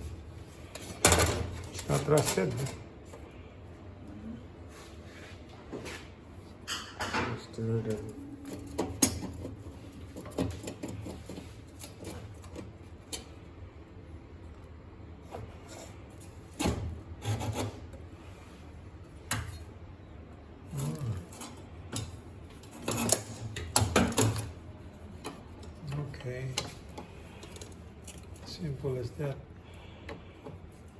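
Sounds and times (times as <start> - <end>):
rubbing and scraping on metal parts: 0.0 - 2.8, 7.6 - 13.2, 15.2 - 18.7, 20.6 - 30.9.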